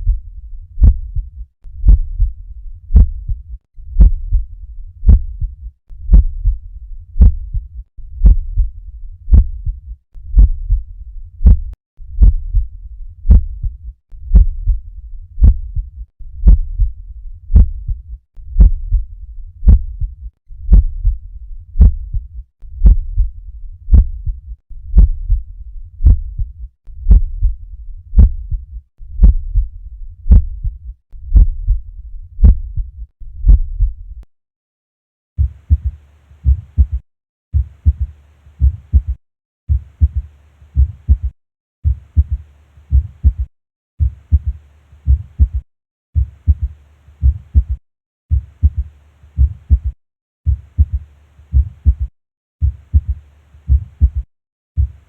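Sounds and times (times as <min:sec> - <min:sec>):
heartbeat through stethoscope: 0:00.0 - 0:34.2, 0:35.4 - 0:37.0, 0:37.6 - 0:45.6, 0:46.2 - 0:55.0.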